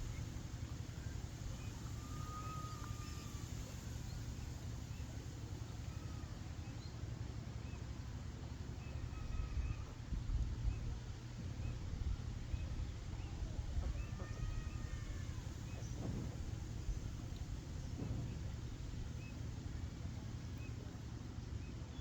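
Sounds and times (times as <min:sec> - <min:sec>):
steady low rumble: 0:00.0 - 0:06.2
faint bird whistles: 0:00.0 - 0:06.9.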